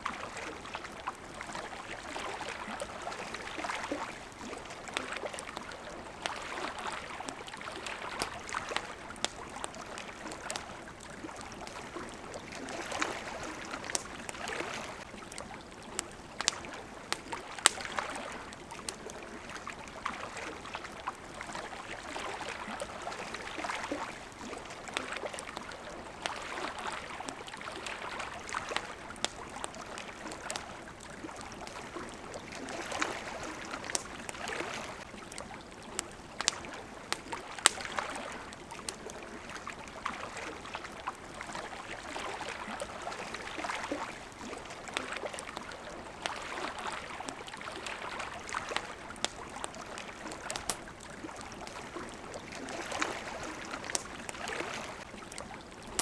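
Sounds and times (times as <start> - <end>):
campfire crackling and popping: 0.0 - 56.0
water lapping against riverbank: 0.0 - 56.0.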